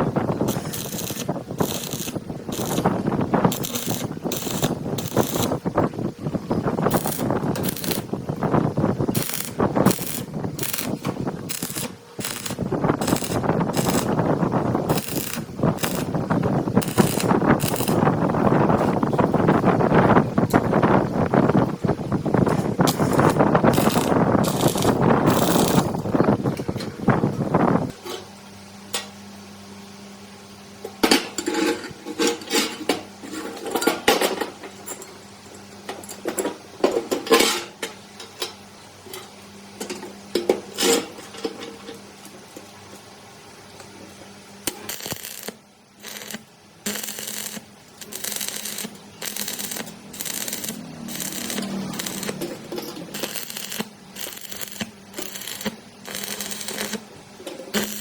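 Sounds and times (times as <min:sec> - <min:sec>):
rasping strokes on metal: 0:00.5 - 0:02.9.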